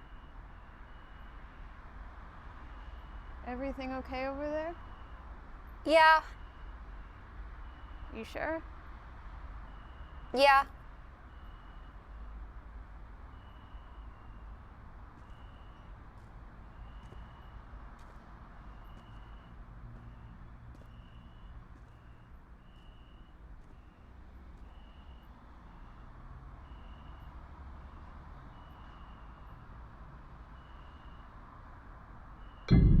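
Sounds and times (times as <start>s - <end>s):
electronic beeper high tone: 32.7s - 33.0s
low steady rumble: 32.7s - 33.0s.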